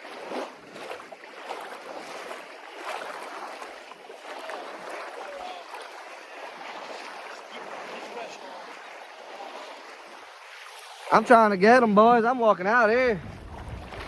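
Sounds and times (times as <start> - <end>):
sharp water splashes: 0.0 - 14.0
small waves washing: 0.0 - 14.0.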